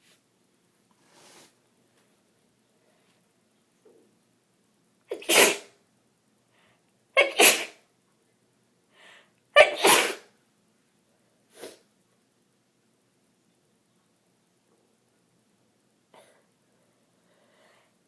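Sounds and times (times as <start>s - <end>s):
woman sneezing: 5.1s - 5.7s, 7.2s - 7.8s, 9.6s - 10.3s.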